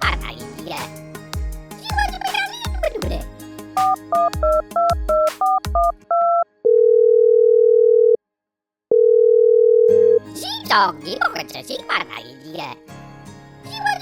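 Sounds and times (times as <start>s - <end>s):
cartoon background music: 0.0s - 6.1s, 10.0s - 14.0s
telephone ringing tone: 6.1s - 8.2s, 8.9s - 10.2s.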